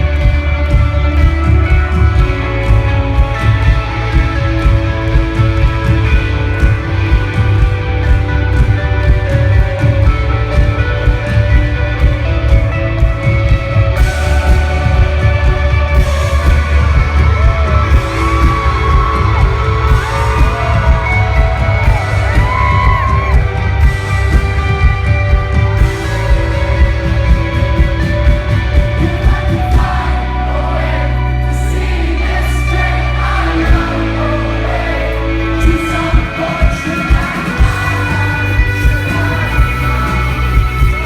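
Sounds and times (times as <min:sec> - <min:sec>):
rock band playing live: 0:00.0 - 0:41.0.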